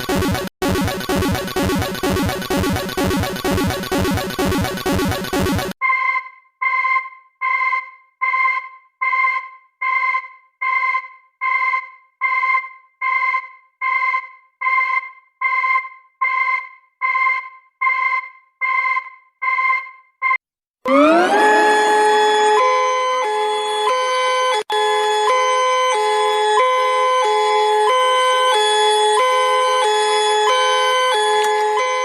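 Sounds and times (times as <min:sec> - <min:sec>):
electronic alert beeps: 0:00.0 - 0:06.1.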